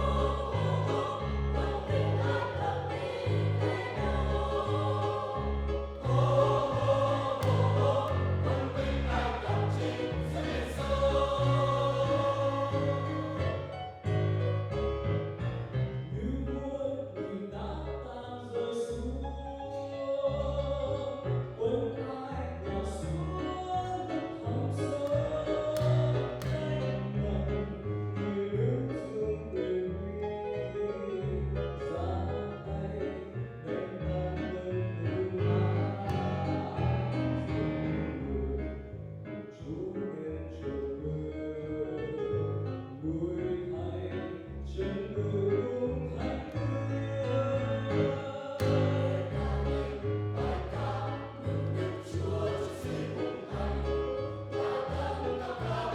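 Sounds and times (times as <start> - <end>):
church choir singing a hymn: 0.0 - 14.4, 23.9 - 28.5, 31.9 - 38.8, 47.8 - 55.9
keyboard accompaniment: 0.0 - 18.1, 19.4 - 39.5, 45.4 - 55.9.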